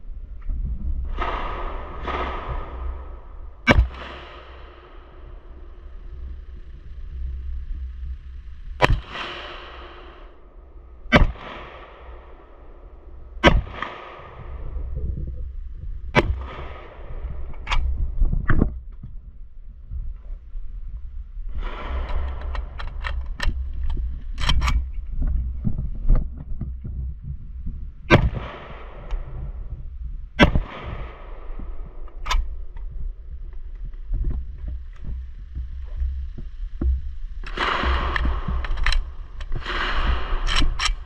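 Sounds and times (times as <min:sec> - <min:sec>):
steady low rumble: 0:00.0 - 0:41.0
gunshots with echo: 0:01.1 - 0:06.0, 0:08.8 - 0:10.4, 0:11.1 - 0:12.7, 0:13.4 - 0:14.8, 0:28.1 - 0:29.3, 0:30.4 - 0:32.3, 0:37.5 - 0:41.0.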